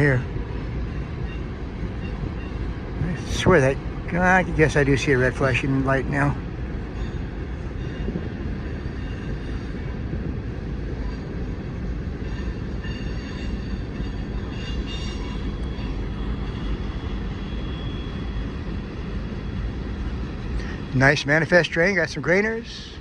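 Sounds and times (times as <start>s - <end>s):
freight train wheels rumbling on rail: 0.0s - 23.0s
high wheel squeal: 12.2s - 18.5s.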